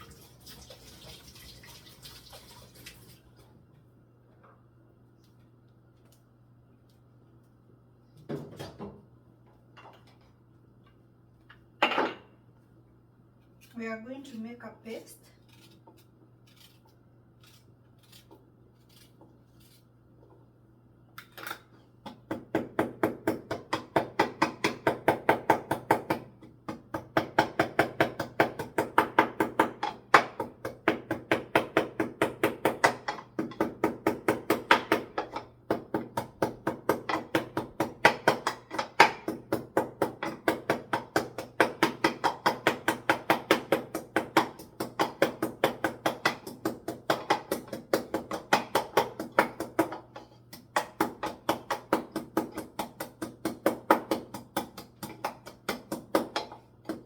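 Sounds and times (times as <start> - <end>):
pestle pounding in a mortar: 22.0 - 57.0.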